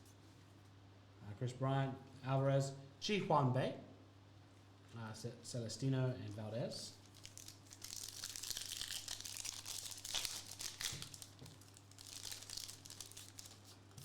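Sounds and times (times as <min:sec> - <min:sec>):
foil wrapper crinkling and tearing: 0:06.9 - 0:14.0.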